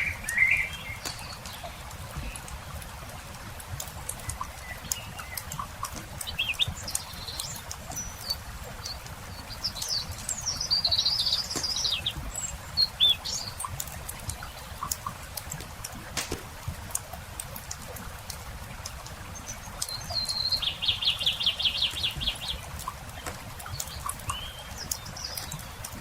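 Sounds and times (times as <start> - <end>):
campfire crackling: 0.0 - 26.0
songbirds chirping and trilling: 0.0 - 26.0.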